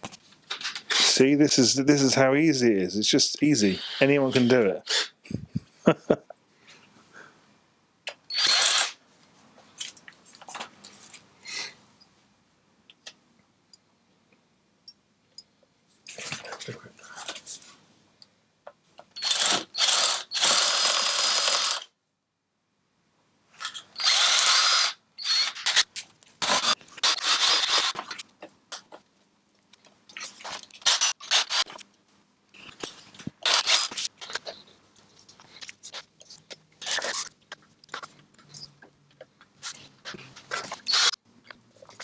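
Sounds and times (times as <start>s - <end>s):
power drill drilling rivets: 8.1s - 9.0s, 19.1s - 21.9s, 23.6s - 28.2s, 30.4s - 31.8s, 33.4s - 34.4s, 40.6s - 41.2s.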